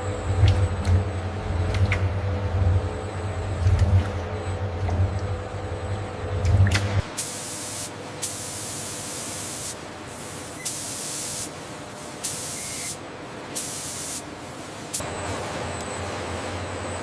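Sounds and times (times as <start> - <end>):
low machine hum: 0.0 - 7.2, 14.3 - 17.0
hissing spray blasts: 7.2 - 13.0, 13.6 - 15.0.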